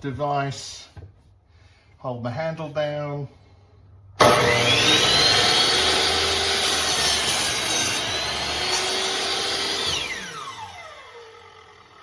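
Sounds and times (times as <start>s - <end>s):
miter saw cutting timber: 4.2s - 12.0s
saw blade winding down: 4.2s - 12.0s.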